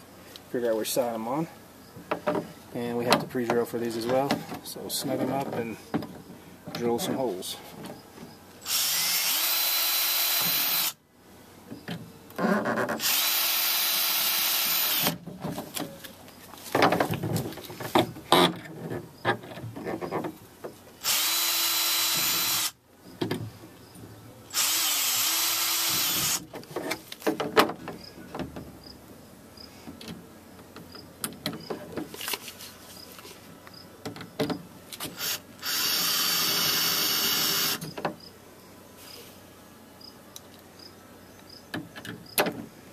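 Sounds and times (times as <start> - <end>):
power drill running: 8.6 - 11.0, 13.0 - 15.1, 21.0 - 22.8, 24.5 - 26.4, 35.2 - 37.8.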